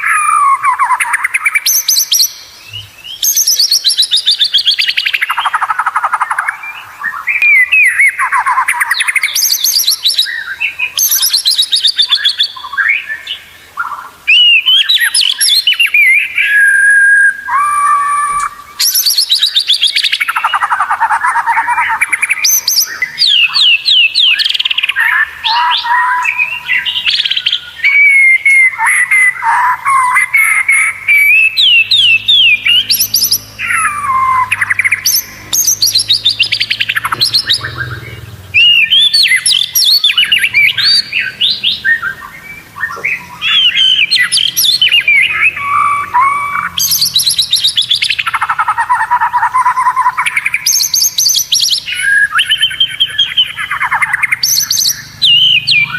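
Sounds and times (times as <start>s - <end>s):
songbird singing trills and whistles: 0.0s - 55.9s.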